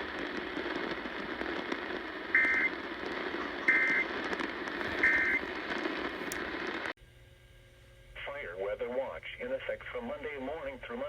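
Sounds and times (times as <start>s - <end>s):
radio hiss: 0.0s - 6.9s, 8.2s - 11.0s
warbling two-tone alert signal: 3.3s - 4.1s, 5.0s - 5.4s.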